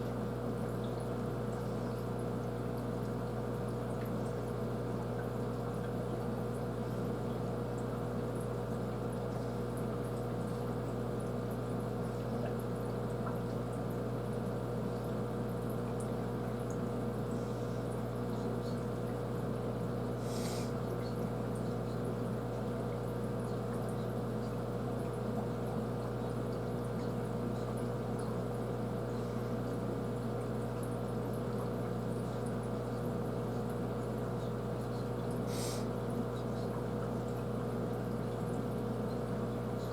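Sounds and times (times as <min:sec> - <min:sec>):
aquarium filter pump humming: 0:00.0 - 0:39.9
water splashing in tank: 0:00.1 - 0:39.9
short hiss: 0:35.5 - 0:35.9.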